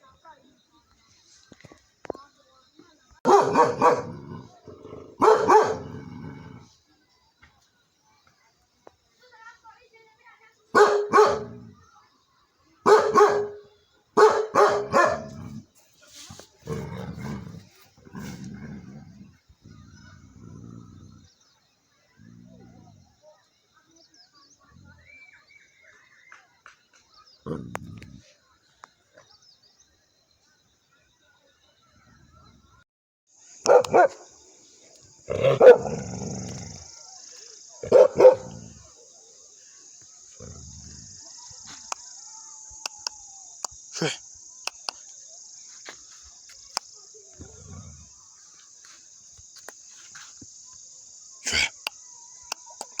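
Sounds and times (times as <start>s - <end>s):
dog barking: 3.2s - 4.4s, 5.2s - 6.0s, 10.7s - 11.6s, 12.8s - 15.4s, 33.6s - 34.3s, 35.3s - 36.0s, 37.8s - 38.8s.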